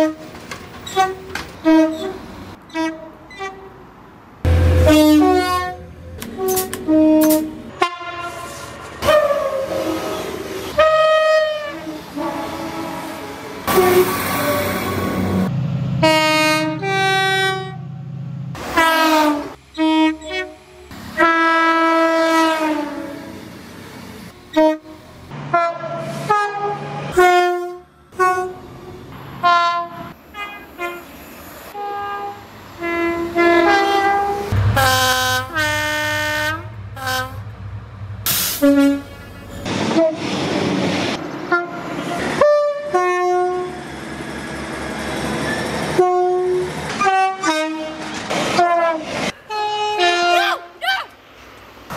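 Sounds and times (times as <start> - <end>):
train rumbling: 0.0 - 51.9
train horn blasts: 1.0 - 3.7, 4.5 - 17.9, 18.8 - 23.3, 24.5 - 28.7, 29.4 - 31.1, 31.7 - 37.5, 38.6 - 40.3, 41.5 - 43.8, 46.0 - 50.8.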